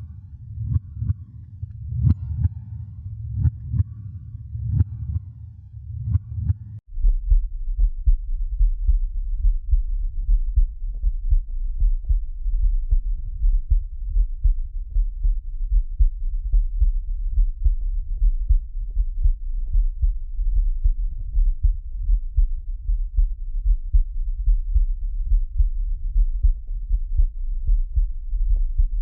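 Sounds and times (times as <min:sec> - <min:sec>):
heartbeat thuds: 0:06.0 - 0:29.0.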